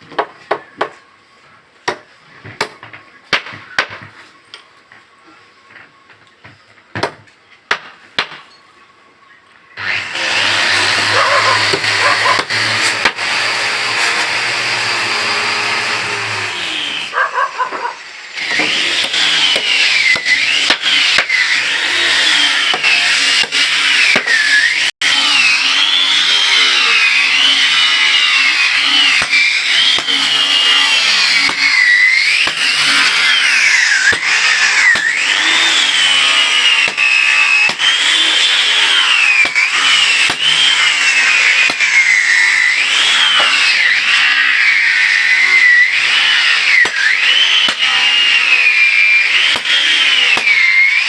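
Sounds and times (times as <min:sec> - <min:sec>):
power tool cutting wood: 0:09.8 - 0:51.0.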